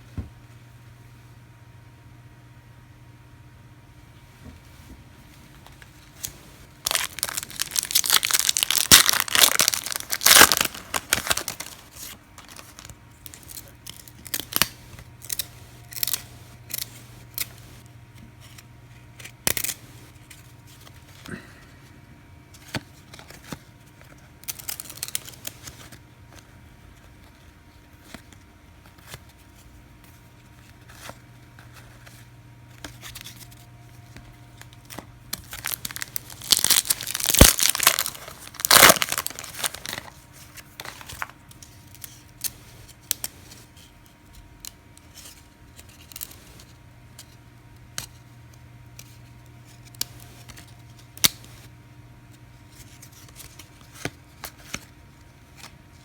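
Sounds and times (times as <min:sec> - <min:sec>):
cards being handled: 0:05.7 - 0:21.3, 0:22.6 - 0:47.3, 0:52.7 - 0:56.0
wrapper torn open and crinkled: 0:06.8 - 0:17.6, 0:24.4 - 0:25.9, 0:34.8 - 0:40.2.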